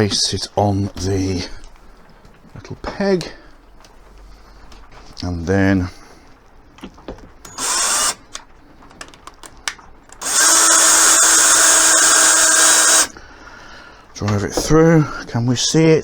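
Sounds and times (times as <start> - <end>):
power drill driving screw: 7.4 - 8.4, 10.1 - 13.1.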